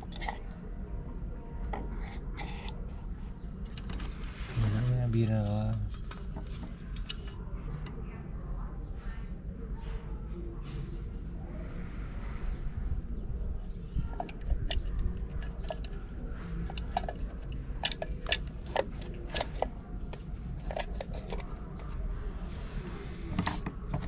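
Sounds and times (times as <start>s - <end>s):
faint steady hum: 0.0s - 24.0s
clicks and clatters of tools: 14.1s - 22.0s.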